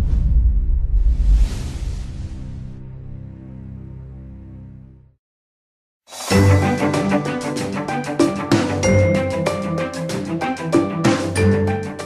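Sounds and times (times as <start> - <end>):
theme music with percussive beat: 6.1 - 12.0.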